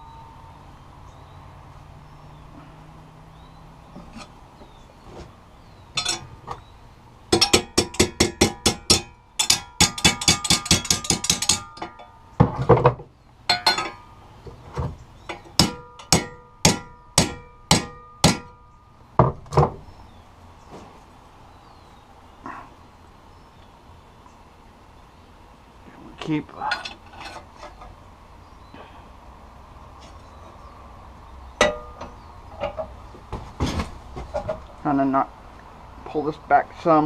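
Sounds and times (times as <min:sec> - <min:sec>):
scraping metal clank: 0:05.9 - 0:06.7, 0:07.4 - 0:18.6, 0:26.6 - 0:28.0
hammer striking steel bar: 0:07.3 - 0:12.1, 0:15.6 - 0:18.6, 0:31.6 - 0:32.0.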